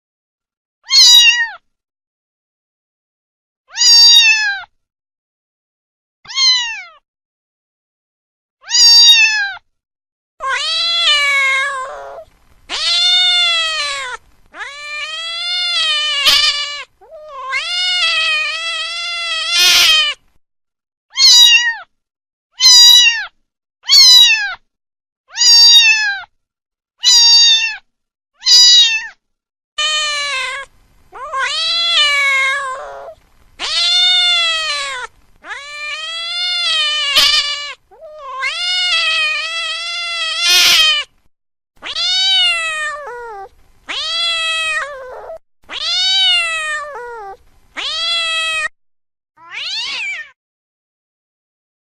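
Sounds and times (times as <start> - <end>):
cat meowing: 0.8 - 1.6, 3.7 - 4.7, 6.3 - 7.0, 8.6 - 9.6, 10.4 - 20.2, 21.1 - 21.9, 22.6 - 24.6, 25.3 - 26.3, 27.0 - 29.2, 29.8 - 41.1, 41.8 - 48.7, 49.4 - 50.4.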